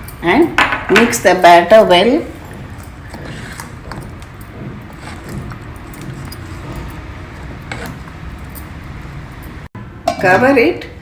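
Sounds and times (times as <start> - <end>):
wet batter stirring: 1.4 - 9.7.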